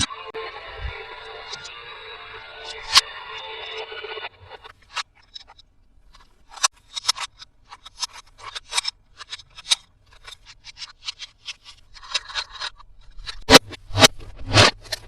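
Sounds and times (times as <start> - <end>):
toy packaging clicks and crinkles: 4.8 - 13.4.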